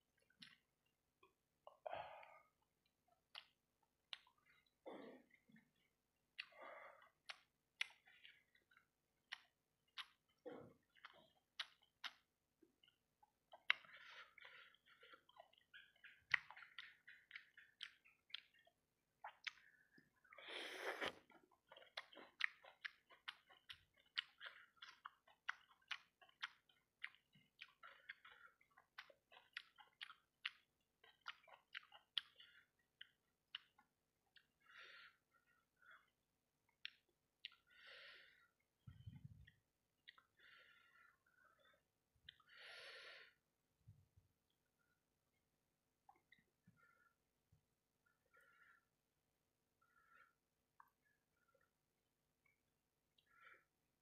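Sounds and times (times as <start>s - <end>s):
close chewing mouth sounds: 0.2s - 37.8s, 39.4s - 42.5s.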